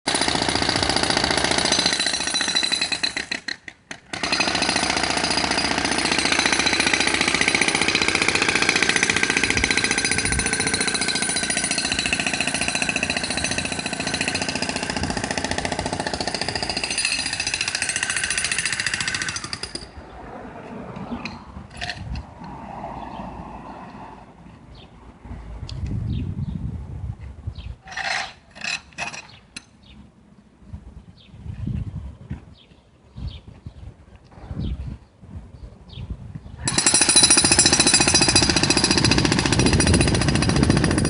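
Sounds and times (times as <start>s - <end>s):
jackhammer hammering: 0.1s - 19.9s, 36.7s - 41.0s.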